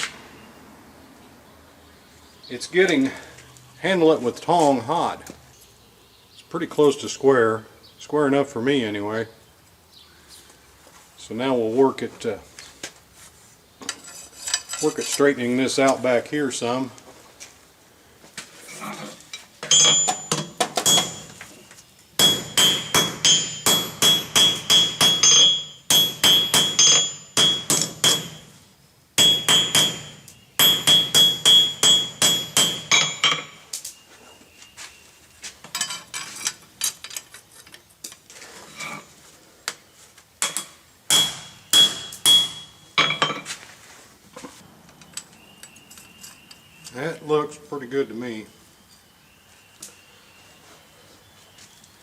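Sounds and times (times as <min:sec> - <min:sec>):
hammer ringing on anvil: 0:19.7 - 0:21.4, 0:22.2 - 0:28.5, 0:29.2 - 0:33.6, 0:41.1 - 0:43.4.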